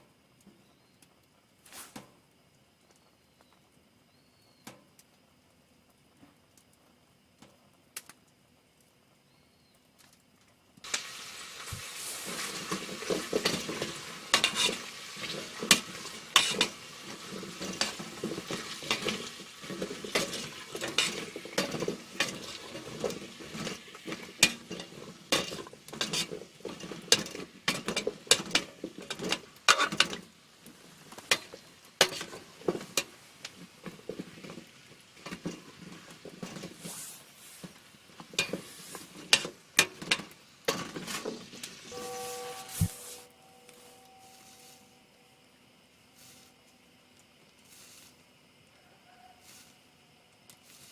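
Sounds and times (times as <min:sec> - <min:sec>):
food sizzling in a pan: 0:10.8 - 0:46.6, 0:47.6 - 0:50.9
metal utensil clinking on pan: 0:13.1 - 0:16.8, 0:17.6 - 0:30.2, 0:31.3 - 0:33.1.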